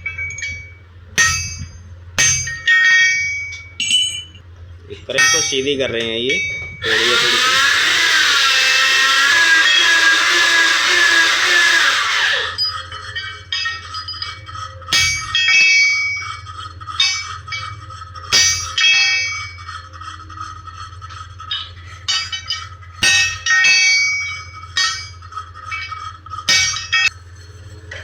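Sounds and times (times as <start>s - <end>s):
hammer striking metal: 1.2s - 4.3s, 14.9s - 16.0s, 22.1s - 25.1s
loud harsh wavering noise: 6.8s - 12.8s.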